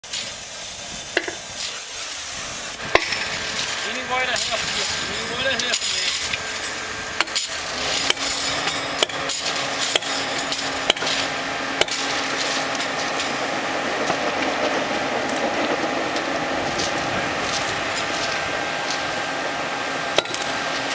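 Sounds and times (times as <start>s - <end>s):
steady hiss: 0.0s - 13.9s
sharp metal knocks: 2.9s - 3.3s, 7.2s - 12.2s, 20.2s - 20.6s.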